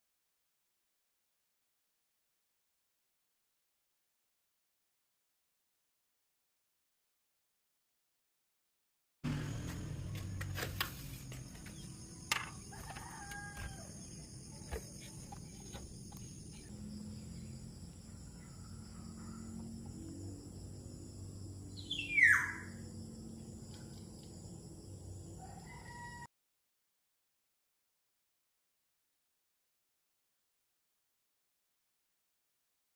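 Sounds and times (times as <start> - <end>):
faint high-pitched hum: 11.7 - 25.9
bird calls: 21.8 - 22.8.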